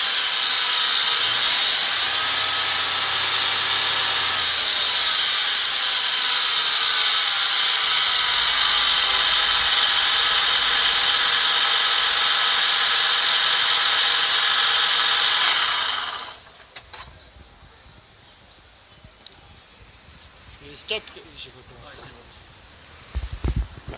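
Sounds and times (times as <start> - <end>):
car engine running: 0.0 - 16.4.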